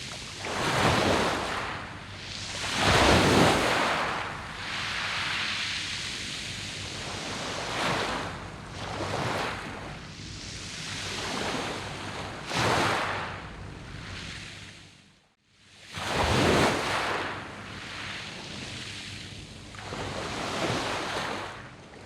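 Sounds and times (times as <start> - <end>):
waves breaking on pebble beach: 0.0 - 5.9, 16.0 - 17.4.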